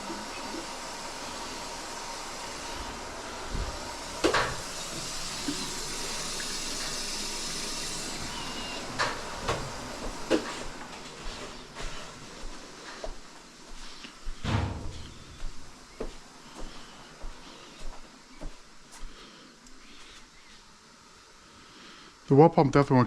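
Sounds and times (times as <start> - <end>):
water hissing from tap: 0.0 - 11.1.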